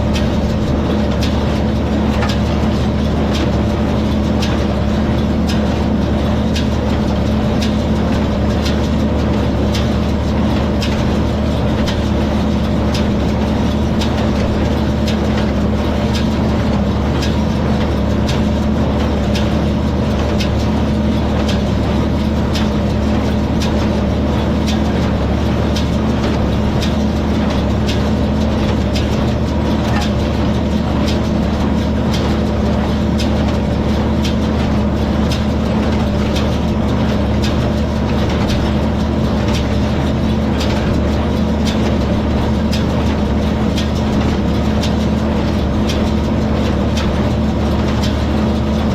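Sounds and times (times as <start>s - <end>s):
hay baler clicking: 0.0s - 48.9s
tractor engine droning: 0.0s - 48.9s.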